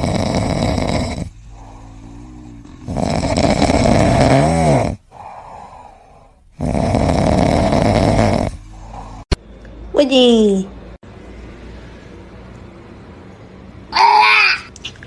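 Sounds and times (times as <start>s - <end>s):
loud snoring: 0.0s - 9.3s.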